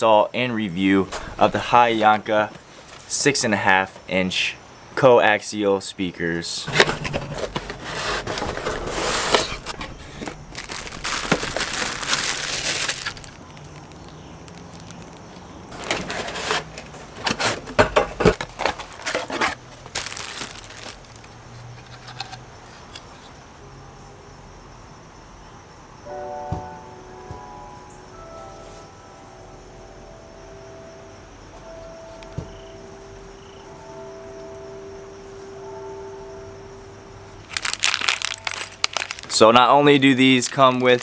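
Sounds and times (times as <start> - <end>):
packaging crinkling: 1.1 - 3.2, 6.7 - 23.2, 37.4 - 41.0.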